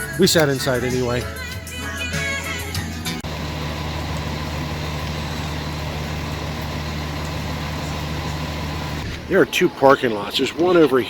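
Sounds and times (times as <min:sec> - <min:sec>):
vehicle engine idling: 0:03.2 - 0:09.1.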